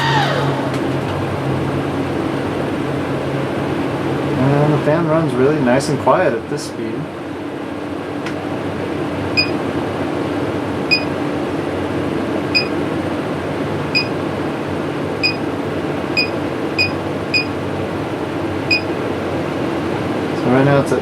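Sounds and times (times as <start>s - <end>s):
vent fan humming: 0.0s - 21.0s
fan control beeps: 9.4s - 9.6s, 10.9s - 11.2s, 12.5s - 12.8s, 13.9s - 14.2s, 15.2s - 15.5s, 16.1s - 17.6s, 18.6s - 19.0s.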